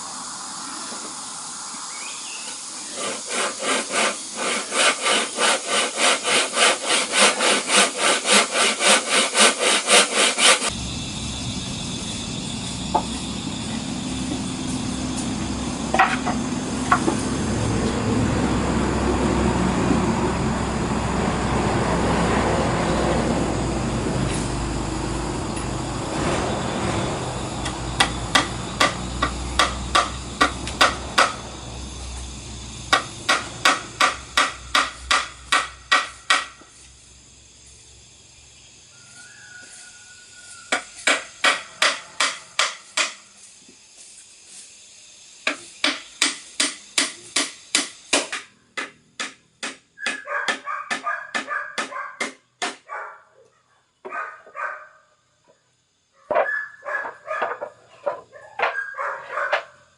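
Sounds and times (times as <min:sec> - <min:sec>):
hammer blows: 0:25.4 - 0:31.6, 0:32.9 - 0:36.7, 0:45.4 - 0:52.8.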